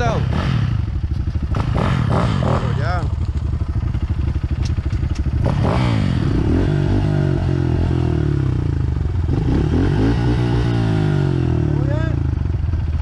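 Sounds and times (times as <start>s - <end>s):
dirt bike engine revving: 0.0s - 12.4s.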